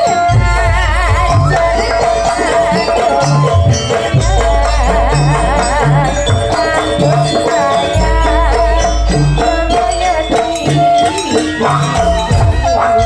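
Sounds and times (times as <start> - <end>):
ornamented high melody: 0.0 - 13.0
low pitched drum beat: 0.2 - 13.0.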